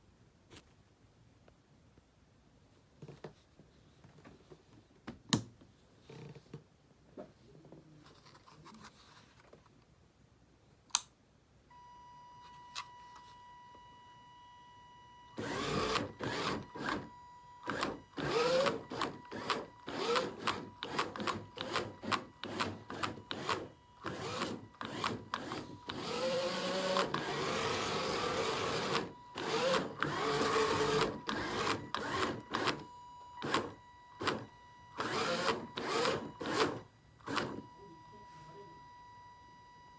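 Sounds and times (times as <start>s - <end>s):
click: 10.9s - 11.2s, 12.7s - 13.2s
small electric motors whirring: 15.4s - 37.7s.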